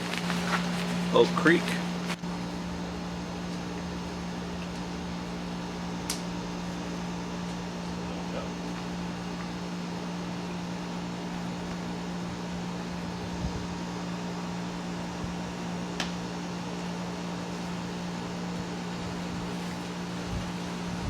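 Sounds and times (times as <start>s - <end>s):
low mechanical hum: 0.0s - 21.0s.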